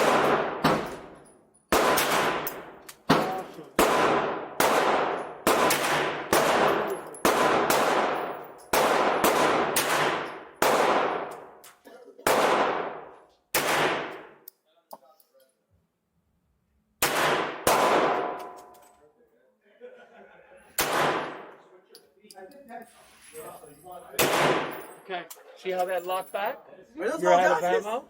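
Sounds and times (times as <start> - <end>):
pistol shots echoing: 0.0 - 11.6, 12.2 - 14.4, 17.0 - 18.7, 20.8 - 21.5, 24.2 - 24.8.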